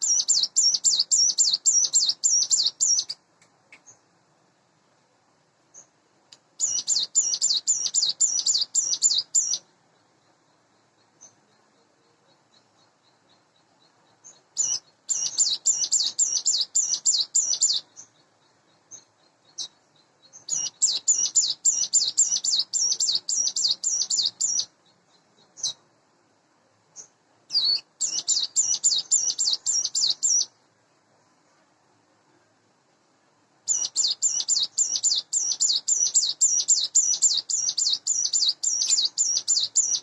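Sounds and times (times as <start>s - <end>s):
short bird chirps: 6.6s - 9.6s, 11.0s - 25.8s, 27.0s - 30.5s, 33.7s - 40.0s.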